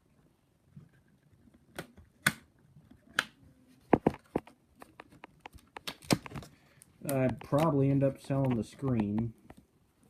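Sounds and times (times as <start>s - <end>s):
clicks and taps of plastic parts: 3.1s - 9.7s.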